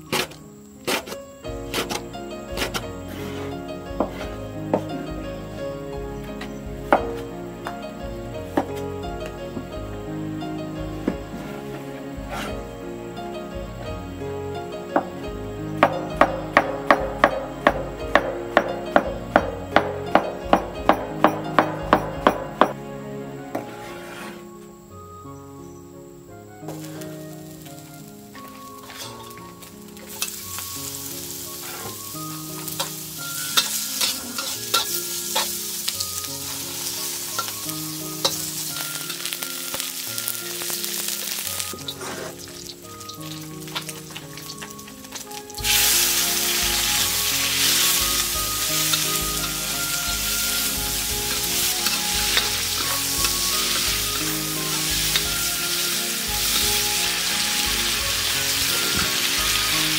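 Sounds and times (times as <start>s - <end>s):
quiet background music: 0.0s - 59.9s
food sizzling in a pan: 26.7s - 59.9s.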